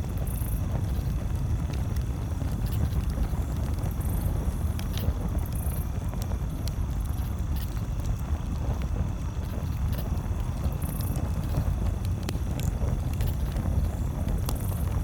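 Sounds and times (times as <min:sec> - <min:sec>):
campfire crackling: 0:00.0 - 0:15.0
fire popping: 0:00.0 - 0:15.0.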